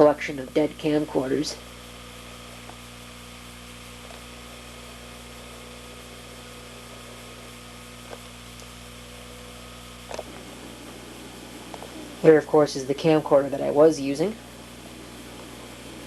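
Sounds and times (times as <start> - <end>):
electrical hum: 0.0 - 16.0.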